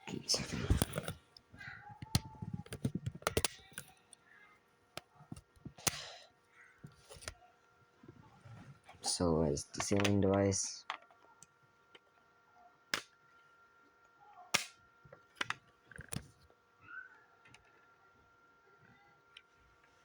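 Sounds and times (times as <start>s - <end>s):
hard plastic parts clicking: 0.6s - 4.1s.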